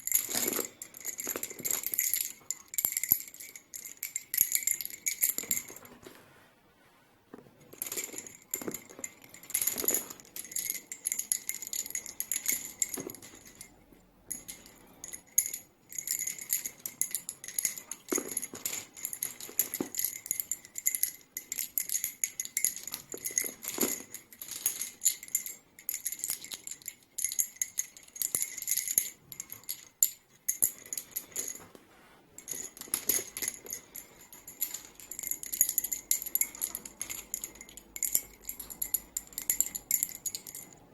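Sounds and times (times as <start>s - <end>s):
wooden bobbins clacking: 14.3s - 31.8s.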